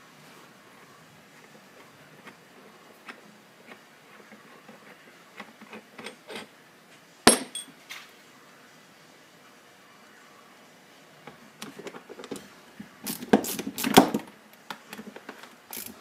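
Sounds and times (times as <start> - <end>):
metal tools tapping and clinking: 7.3 - 7.7
sharp metallic clank: 7.3 - 7.7.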